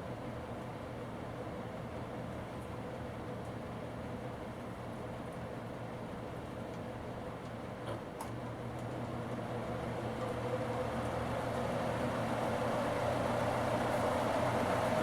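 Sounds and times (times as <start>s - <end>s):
ceiling fan motor hum: 8.4s - 15.0s
rush of air from fan blades: 11.4s - 15.0s.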